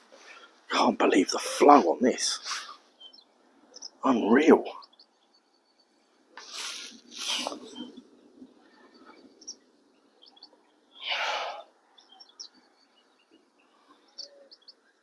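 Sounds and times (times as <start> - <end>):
small birds chirping: 0.1 - 15.0
breathy rush of noise: 6.1 - 12.0.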